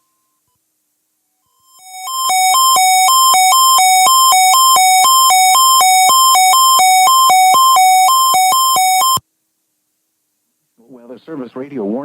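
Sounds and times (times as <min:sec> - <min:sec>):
buzzy hi-lo alarm tone: 0:01.5 - 0:09.2.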